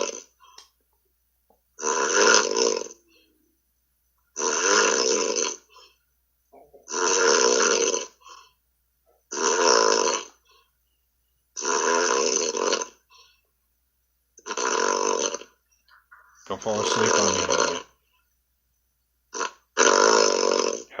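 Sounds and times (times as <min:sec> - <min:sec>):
man snoring over phone call: 0:00.0 - 0:00.5, 0:01.8 - 0:03.4, 0:04.4 - 0:05.9, 0:06.7 - 0:08.5, 0:09.3 - 0:10.5, 0:11.6 - 0:13.2, 0:14.4 - 0:15.7, 0:16.4 - 0:18.0, 0:19.3 - 0:21.0.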